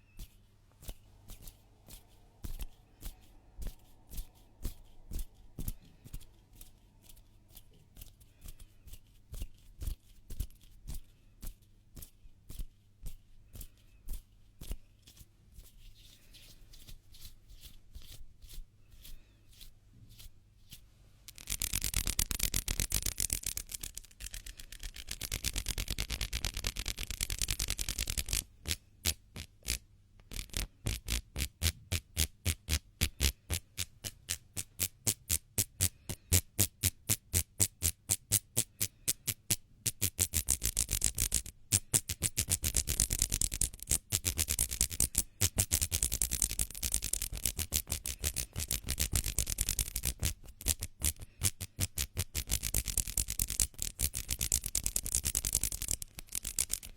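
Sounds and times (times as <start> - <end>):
hands rubbing together: 13.5 - 31.2, 40.0 - 56.9.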